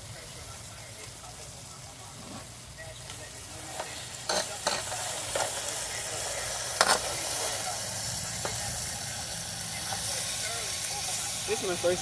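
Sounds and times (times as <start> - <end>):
vegetables sizzling in a pan: 0.0 - 12.0
fork clinking against pan: 3.8 - 5.5.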